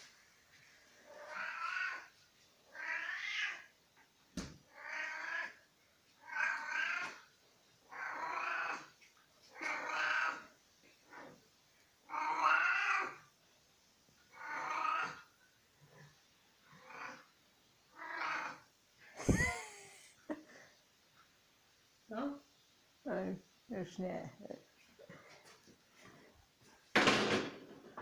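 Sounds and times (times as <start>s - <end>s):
cat meowing: 2.7s - 3.7s, 19.2s - 20.0s.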